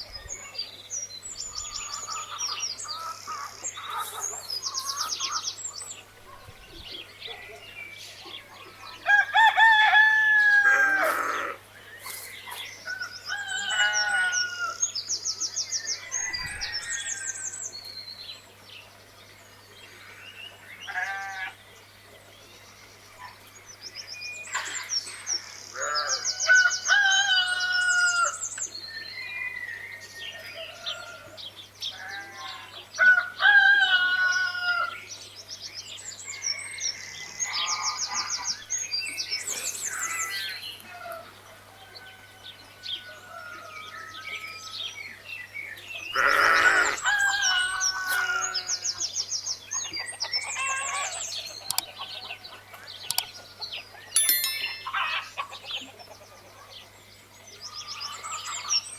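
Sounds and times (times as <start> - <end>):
roosters crowing: 9.0 - 11.7, 12.9 - 14.8, 25.8 - 28.4, 30.4 - 35.0, 46.1 - 48.9, 50.4 - 52.1, 54.2 - 55.9
small birds chirping: 48.0 - 58.9.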